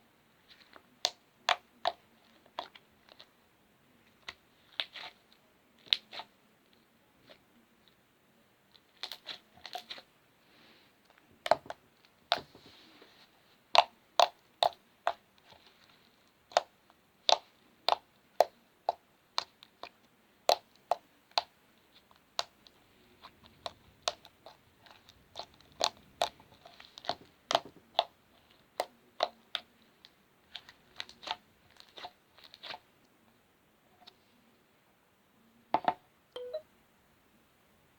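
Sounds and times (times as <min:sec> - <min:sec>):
slime popping and crackling: 0:23.6 - 0:29.6.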